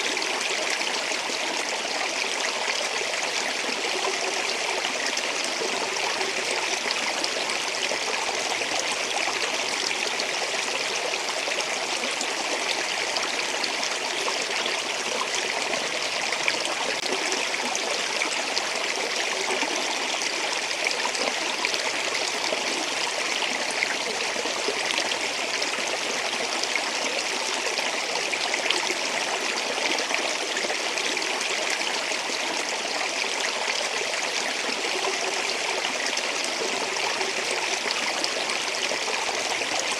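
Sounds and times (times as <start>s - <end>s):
stream water flowing: 0.0s - 39.9s.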